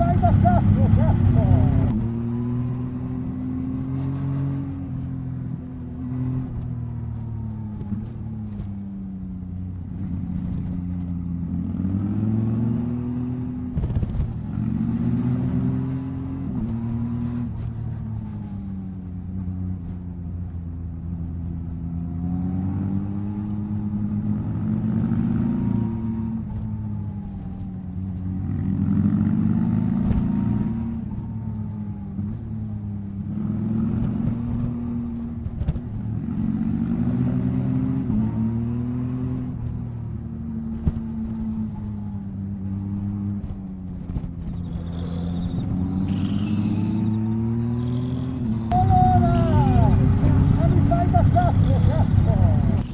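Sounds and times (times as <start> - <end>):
motorcycle engine revving: 0.0 - 8.7, 33.2 - 52.9.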